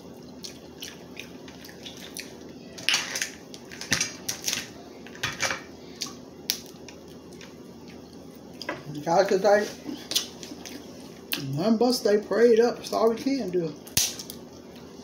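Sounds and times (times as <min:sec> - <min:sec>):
crab shells cracking: 0:06.0 - 0:07.5, 0:13.9 - 0:14.4.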